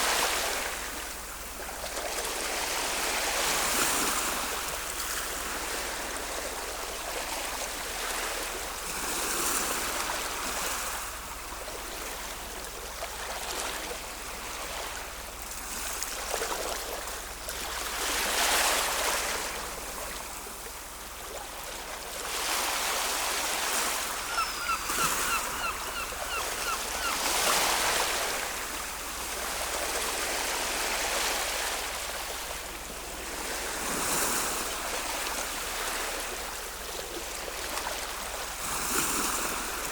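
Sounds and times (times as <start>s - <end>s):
ocean waves breaking: 0.0s - 39.9s
high chirps: 24.2s - 27.2s.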